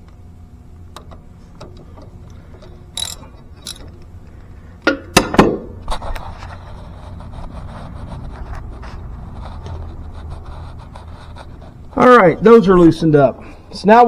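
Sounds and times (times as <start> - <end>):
socket ratchet ticking: 3.0 - 3.8
tool clacking against metal: 3.0 - 3.9.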